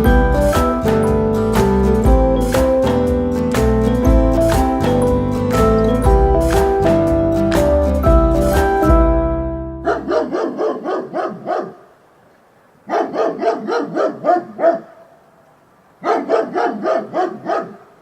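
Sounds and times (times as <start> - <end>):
background music: 0.0 - 10.3
dog yapping: 9.8 - 11.8, 12.9 - 15.1, 16.0 - 17.9.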